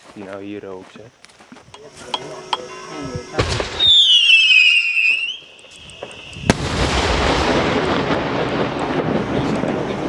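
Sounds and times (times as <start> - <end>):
firework whistling: 1.8 - 10.0
firework bang: 3.2 - 10.0
rumbling echo: 5.9 - 10.0.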